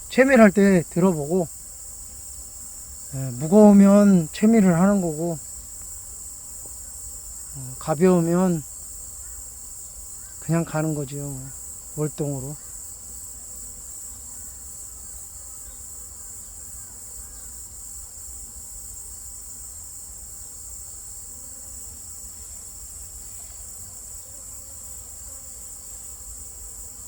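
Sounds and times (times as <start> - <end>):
high insect chirring: 0.0 - 17.6.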